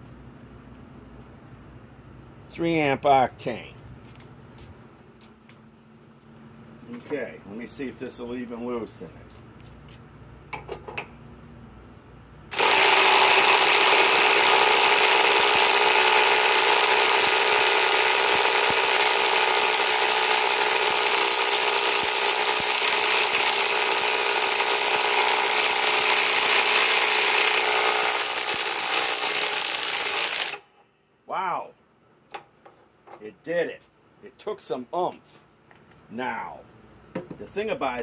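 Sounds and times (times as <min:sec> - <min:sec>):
impact wrench hammering: 0:12.5 - 0:30.8.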